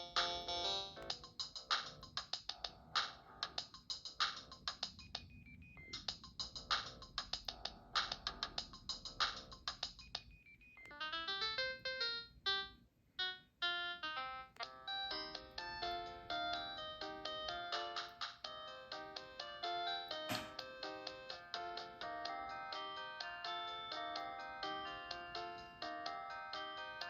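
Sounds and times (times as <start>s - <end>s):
electronic ringtone tune: 4.9s - 6.2s, 9.8s - 18.0s, 20.8s - 27.0s
synth ringtone melody: 4.9s - 6.2s, 9.8s - 27.0s.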